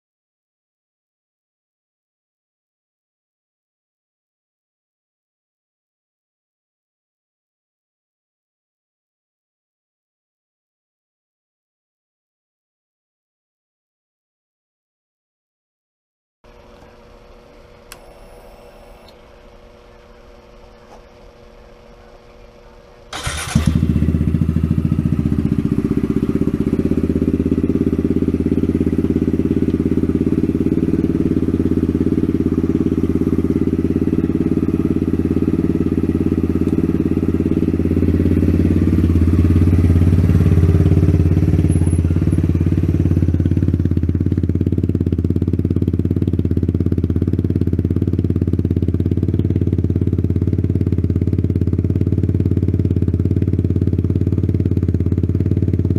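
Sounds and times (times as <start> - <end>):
motorcycle engine running: 22.9 - 55.9.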